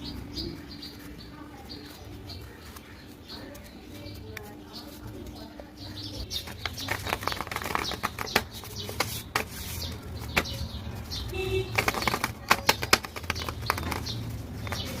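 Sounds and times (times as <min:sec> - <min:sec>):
packaging crinkling and rustling: 0:06.2 - 0:15.0.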